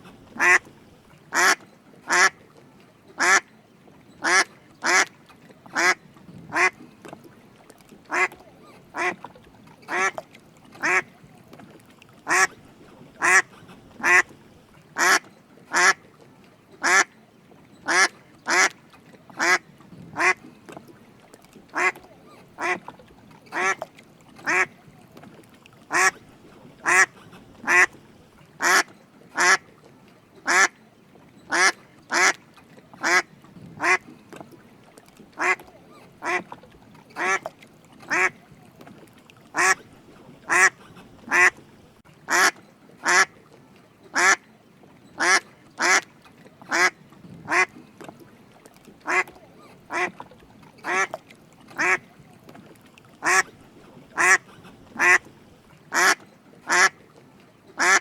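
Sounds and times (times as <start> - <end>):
duck quacking: 0.4 - 0.6, 1.3 - 2.4, 3.2 - 3.4, 4.2 - 5.1, 5.8 - 6.8, 8.1 - 8.4, 9.0 - 9.2, 9.9 - 10.2, 10.8 - 11.1, 12.3 - 12.5, 13.2 - 14.3, 15.0 - 16.0, 20.2 - 20.4, 21.8 - 22.0, 22.6 - 22.8, 23.5 - 23.8, 24.5 - 24.7, 25.9 - 26.2, 26.8 - 28.0, 28.6 - 29.6, 30.5 - 30.7, 31.5 - 32.4, 33.0 - 33.2, 33.8 - 34.0, 35.4 - 35.6, 36.2 - 36.5, 37.2 - 37.5, 38.1 - 38.4, 39.6 - 39.8, 40.5 - 41.6, 42.3 - 43.3, 44.2 - 44.4, 45.2 - 46.0, 46.7 - 46.9, 47.5 - 47.7, 49.0 - 49.3, 49.9 - 50.1, 50.8 - 51.2, 51.8 - 52.0, 53.2 - 53.5, 54.2 - 55.3, 55.9 - 57.0, 57.8 - 58.0.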